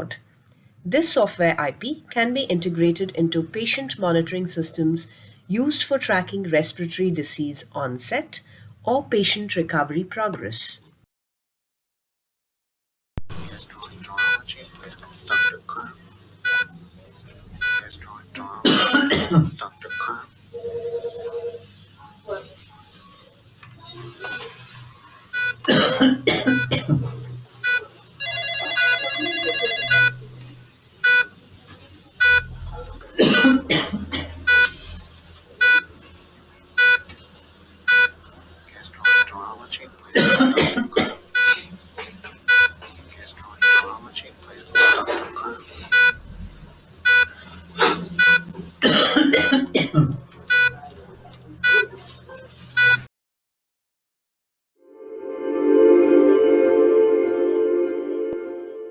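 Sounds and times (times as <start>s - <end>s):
person coughing: 18.6s - 19.5s, 25.7s - 27.1s, 40.2s - 41.2s, 44.8s - 45.4s, 48.8s - 50.2s
ringing phone-like electronic tone: 28.2s - 30.2s.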